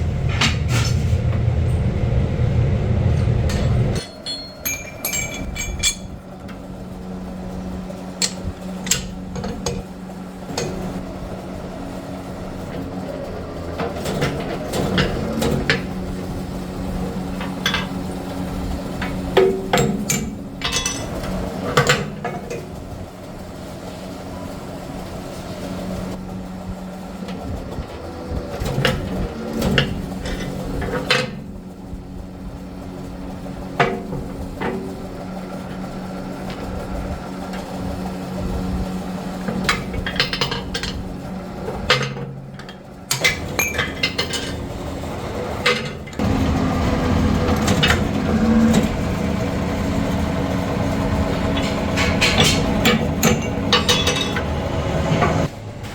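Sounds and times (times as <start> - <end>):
factory machine humming: 0.0 - 55.9
metallic clanks and knocks: 3.1 - 6.7, 8.2 - 9.9, 17.4 - 18.4, 19.0 - 22.7, 45.6 - 55.5.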